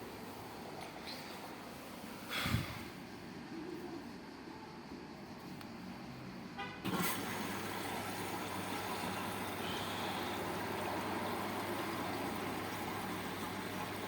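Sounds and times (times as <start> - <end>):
washing machine rushing hum: 5.9 - 14.0
washing machine rattling buzz: 6.8 - 14.0.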